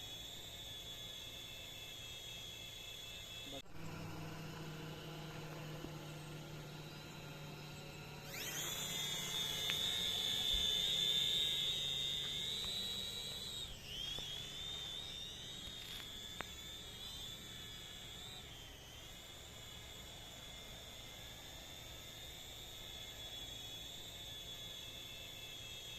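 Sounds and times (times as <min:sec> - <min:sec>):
drone motors whining: 0:00.0 - 0:25.9.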